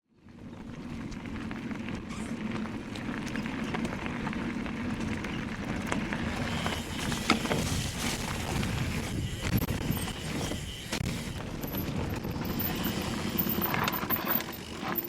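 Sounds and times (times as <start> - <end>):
tyres rolling over dirt: 0.2 - 15.0
bike clicks and knocks: 0.7 - 15.0
electric motor hum: 6.3 - 15.0.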